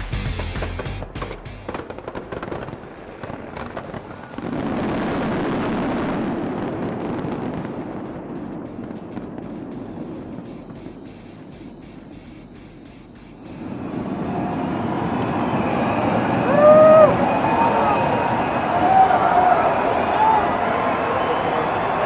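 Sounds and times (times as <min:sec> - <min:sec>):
background music: 0:00.0 - 0:22.0
fireworks popping and crackling: 0:00.6 - 0:22.0
loud rushing roar: 0:13.4 - 0:22.0.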